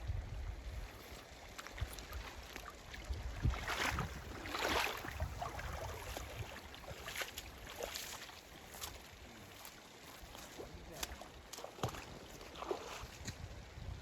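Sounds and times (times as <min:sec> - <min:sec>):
wind rumbling on microphone: 0:00.0 - 0:07.9, 0:12.0 - 0:14.0
creek water running: 0:00.4 - 0:14.0
water splashing surges: 0:00.9 - 0:13.3.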